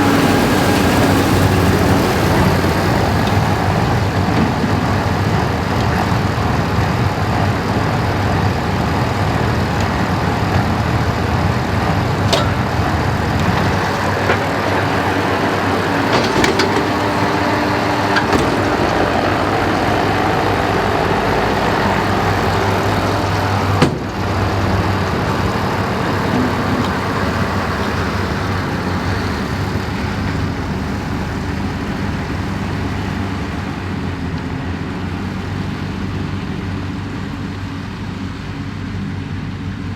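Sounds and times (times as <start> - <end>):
tractor diesel engine running: 0.0 - 39.9
metallic clanks: 11.8 - 20.3, 21.7 - 29.4.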